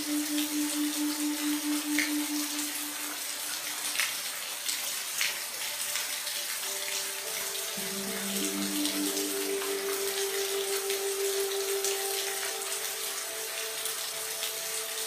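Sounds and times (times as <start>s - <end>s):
faint low steady tones: 0.0s - 3.6s
steady rain falling: 0.0s - 15.0s.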